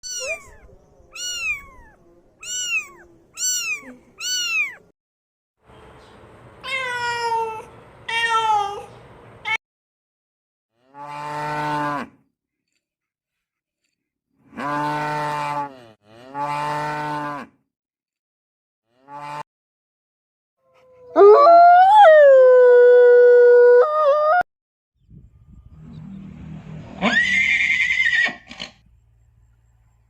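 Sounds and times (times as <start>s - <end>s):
cat meowing: 0.0s - 4.9s
cow mooing: 14.5s - 17.5s.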